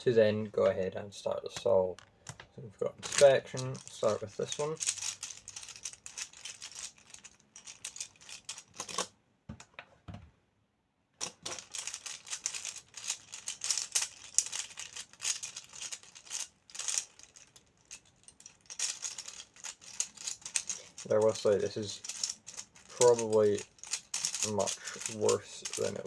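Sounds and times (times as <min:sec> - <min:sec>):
puzzle cube plastic clicking: 0:03.0 - 0:09.1, 0:11.2 - 0:26.0.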